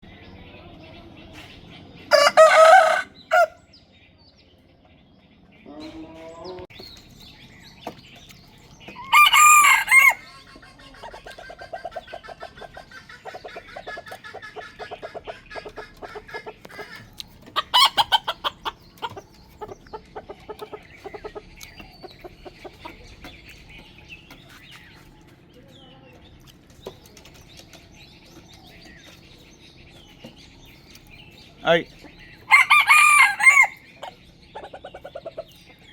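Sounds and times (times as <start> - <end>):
chickens clucking: 0.0 - 35.9
rooster crowing: 2.1 - 3.6, 9.0 - 10.4, 32.5 - 33.9.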